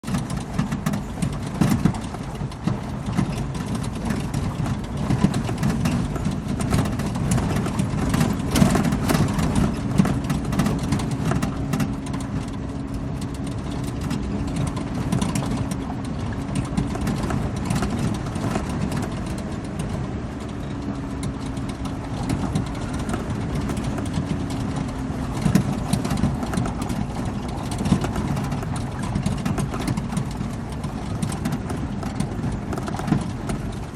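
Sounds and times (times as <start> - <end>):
car engine running: 0.0 - 33.9
knocks and clatters from bumpy ride: 0.0 - 33.9.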